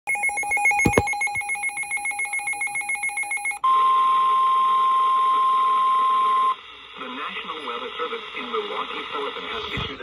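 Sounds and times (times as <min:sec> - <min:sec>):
steady warning alarm tone: 0:00.1 - 0:06.6.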